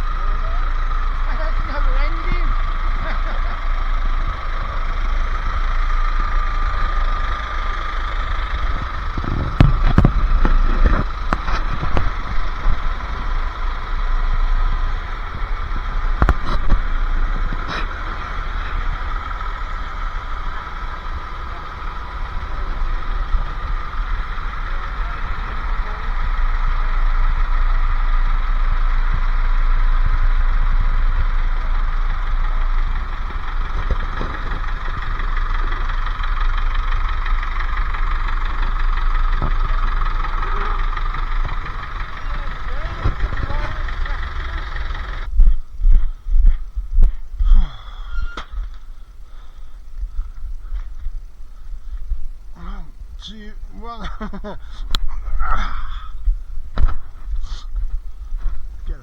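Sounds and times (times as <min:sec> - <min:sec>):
truck engine running: 0:00.0 - 0:59.0
sharp knocks and rattles: 0:02.8 - 0:45.6.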